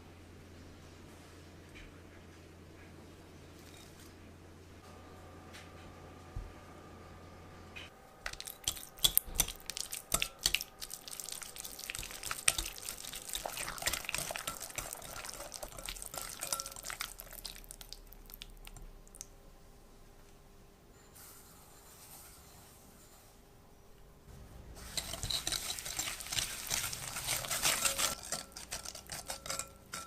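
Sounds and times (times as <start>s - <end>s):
rapid scraping and tapping: 24.9s - 30.0s.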